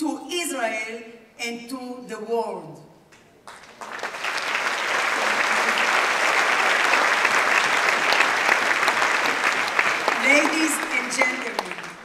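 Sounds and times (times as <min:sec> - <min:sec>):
large audience applauding: 0:03.4 - 0:12.0.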